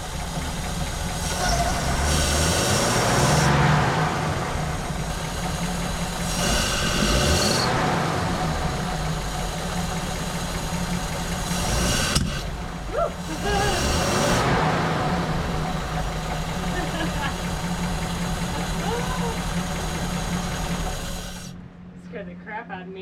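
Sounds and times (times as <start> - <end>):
car engine idling: 0.0 - 22.6.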